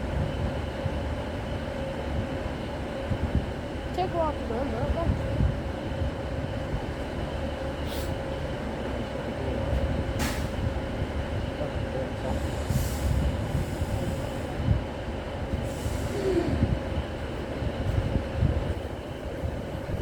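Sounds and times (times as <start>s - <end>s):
train rumbling past: 0.0s - 20.0s
short hisses: 7.9s - 8.2s.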